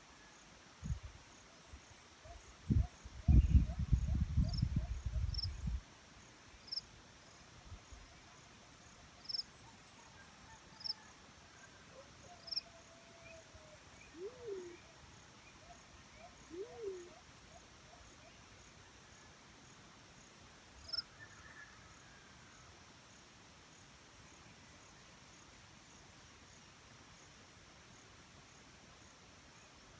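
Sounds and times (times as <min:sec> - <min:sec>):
dove cooing: 0:14.1 - 0:14.8, 0:16.5 - 0:17.2.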